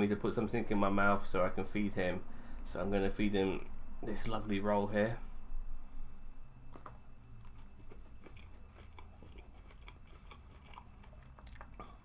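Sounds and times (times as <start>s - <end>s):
person chewing food: 6.7s - 12.0s.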